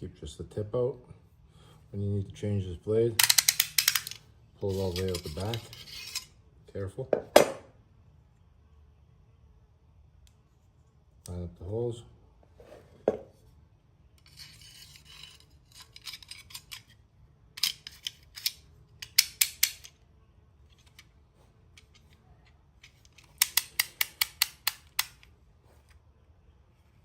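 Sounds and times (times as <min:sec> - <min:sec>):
blade scraping into metal body: 0:04.6 - 0:06.4, 0:14.2 - 0:17.0
knife slider ratcheting clicks: 0:23.1 - 0:25.3.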